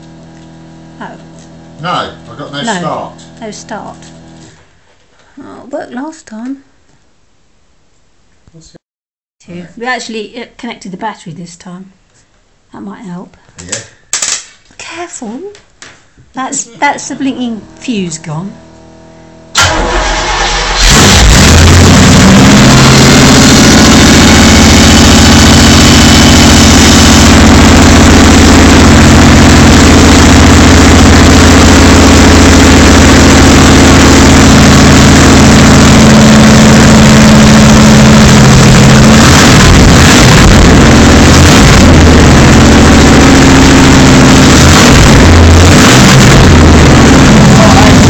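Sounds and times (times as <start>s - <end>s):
loud unmuffled engine idling: 16.8s - 48.0s.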